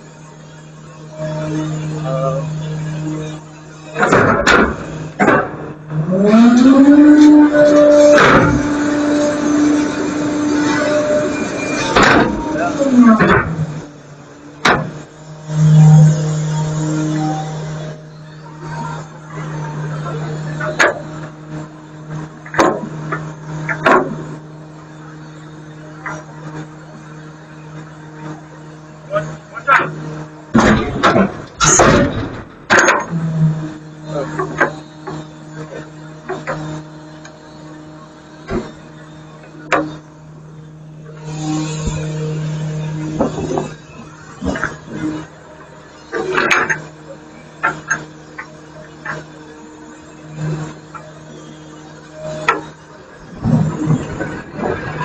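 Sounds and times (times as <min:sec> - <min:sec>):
garbage truck engine humming: 0:00.0 - 0:55.0
clunks: 0:00.4 - 0:55.0
sharp bangs: 0:10.6 - 0:13.9, 0:29.7 - 0:33.2
sharp knocks: 0:14.6 - 0:15.0.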